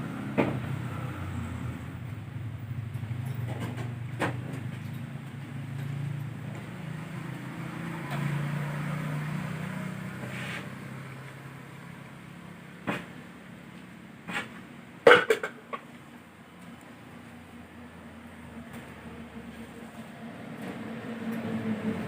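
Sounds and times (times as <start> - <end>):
low engine hum: 0.0 - 13.3, 15.9 - 22.0.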